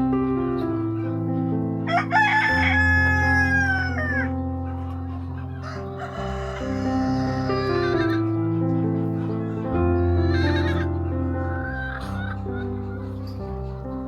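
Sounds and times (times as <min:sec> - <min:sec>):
background music with held notes: 0:00.0 - 0:14.0
rooster crowing: 0:01.9 - 0:04.4, 0:05.5 - 0:08.3, 0:09.2 - 0:12.9.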